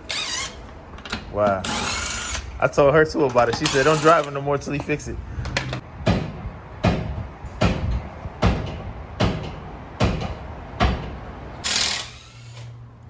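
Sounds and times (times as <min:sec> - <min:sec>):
hard hammer strikes: 0:05.6 - 0:11.2.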